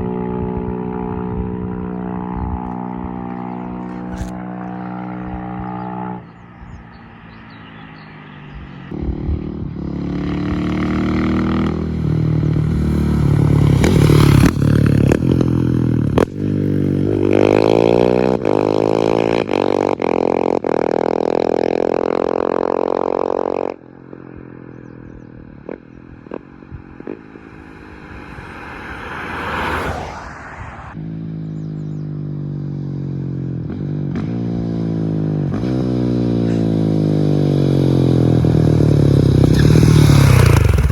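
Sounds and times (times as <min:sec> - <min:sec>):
motorcycle engine accelerating: 0:00.0 - 0:40.9.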